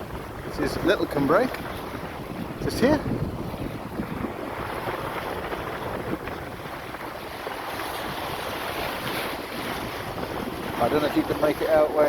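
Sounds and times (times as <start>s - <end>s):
water rushing along hull: 0.0s - 12.0s
wind buffeting microphone: 0.0s - 12.0s.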